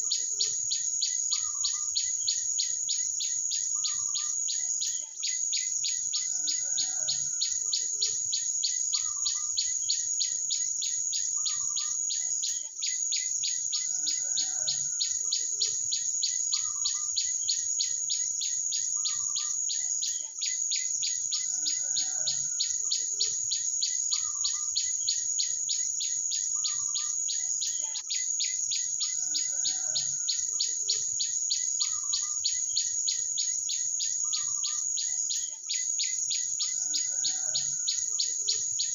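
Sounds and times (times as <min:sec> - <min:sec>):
high-pitched insect trill: 0:00.0 - 0:38.9.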